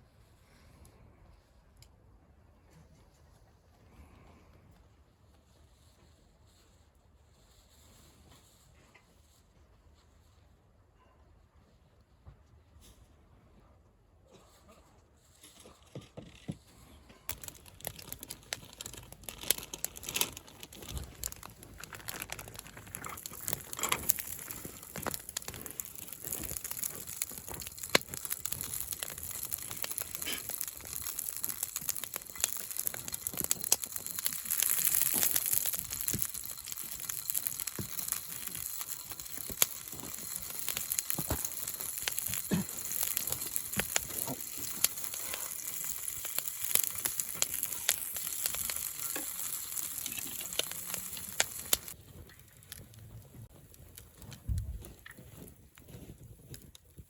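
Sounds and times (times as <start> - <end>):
camp fire crackling: 17.2 - 57.0
food sizzling: 17.3 - 56.1.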